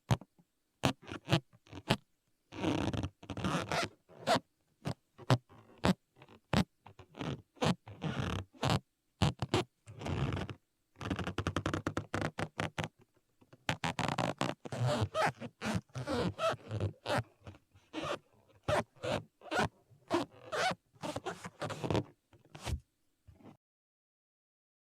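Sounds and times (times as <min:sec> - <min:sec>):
rubber balloon squeaking: 0:00.8 - 0:04.4, 0:13.7 - 0:22.8.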